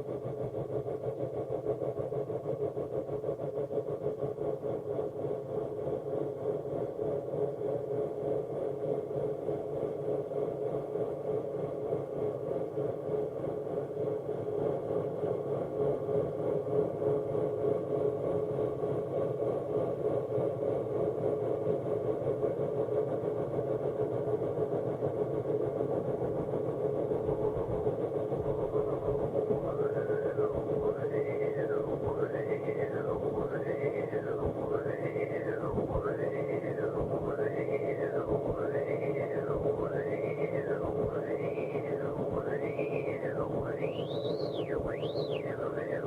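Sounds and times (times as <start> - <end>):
low hum: 25.9 - 46.0
synth drone: 27.3 - 46.0
rising and falling pitch sweeps: 29.6 - 46.0.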